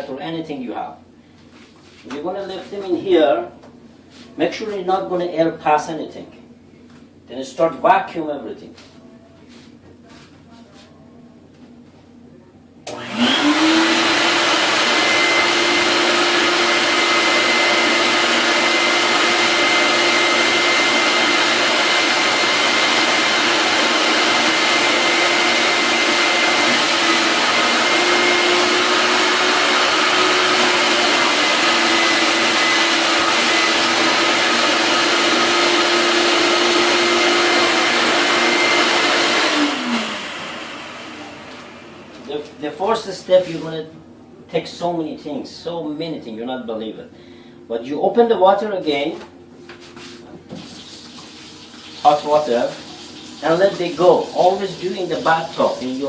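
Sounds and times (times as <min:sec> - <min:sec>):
shop vacuum motor whine: 0:12.8 - 0:43.6.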